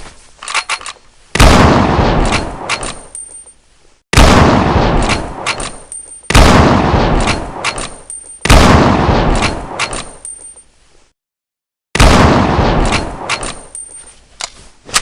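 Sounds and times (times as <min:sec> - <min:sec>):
rifle shots echoing: 0:01.4 - 0:02.7, 0:04.2 - 0:05.7, 0:06.3 - 0:07.8, 0:08.5 - 0:09.9, 0:12.0 - 0:13.5.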